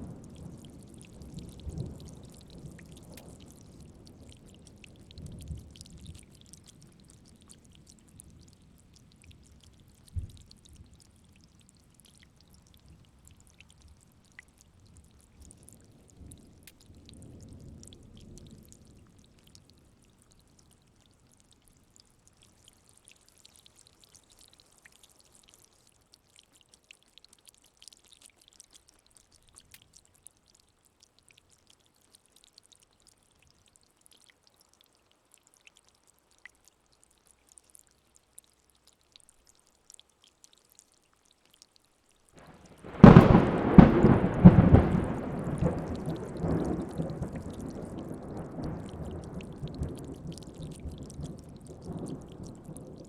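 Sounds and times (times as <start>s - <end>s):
steady rain pattering: 0.0s - 53.0s
low rumbles of thunder: 42.5s - 53.0s.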